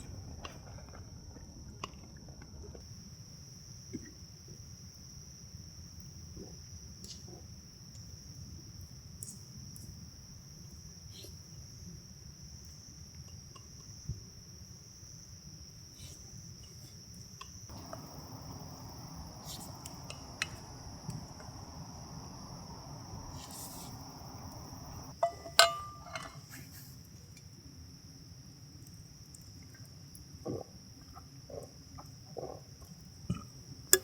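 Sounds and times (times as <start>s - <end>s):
insects chirping: 0.0s - 34.0s
ringing clink: 25.2s - 26.4s.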